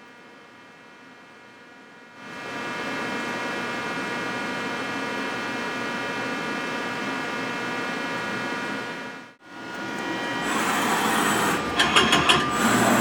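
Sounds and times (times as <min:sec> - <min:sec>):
lathe running with whine: 0:09.4 - 0:13.0.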